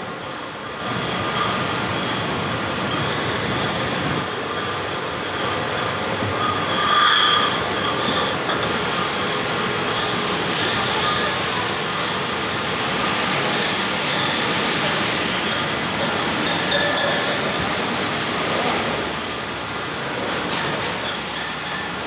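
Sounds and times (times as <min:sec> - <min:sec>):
bottling line running: 0:00.9 - 0:22.0
glass bottles ringing: 0:15.4 - 0:17.9.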